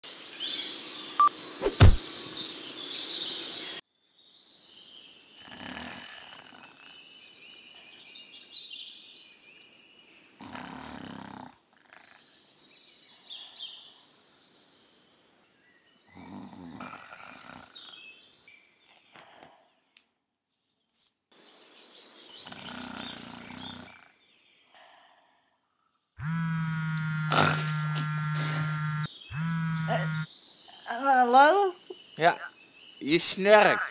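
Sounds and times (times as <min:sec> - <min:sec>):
birds chirping: 0:00.2 - 0:03.8, 0:21.4 - 0:24.8, 0:26.2 - 0:33.9
sharp knock: 0:01.6 - 0:02.0
person snoring: 0:05.4 - 0:07.0, 0:10.4 - 0:12.1, 0:22.4 - 0:24.0, 0:26.6 - 0:30.3.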